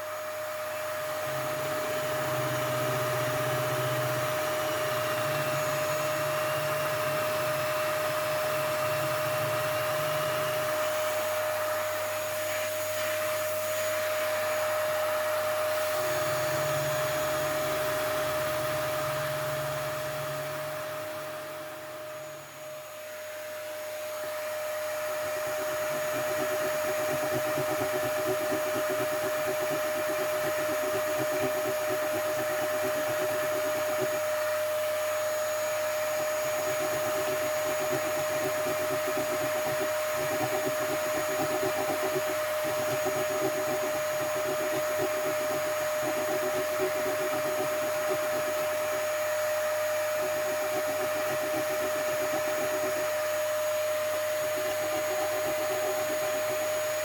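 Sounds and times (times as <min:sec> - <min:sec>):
electric motor whining: 0:01.1 - 0:14.6, 0:25.0 - 0:57.0.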